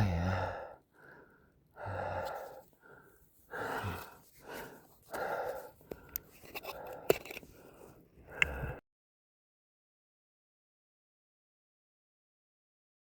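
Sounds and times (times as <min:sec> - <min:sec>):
person breathing hard: 0:00.0 - 0:08.8.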